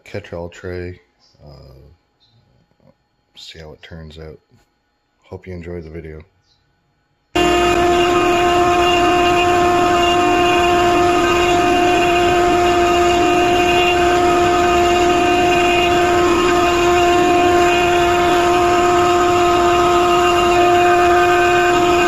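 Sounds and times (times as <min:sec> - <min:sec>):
noisy machine bed: 0:07.4 - 0:22.0
router spindle whining: 0:07.4 - 0:22.0.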